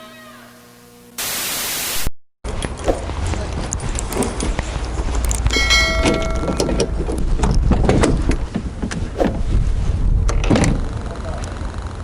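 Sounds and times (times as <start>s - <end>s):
low rumble: 2.8s - 11.0s
struck metal ringing: 5.3s - 7.8s.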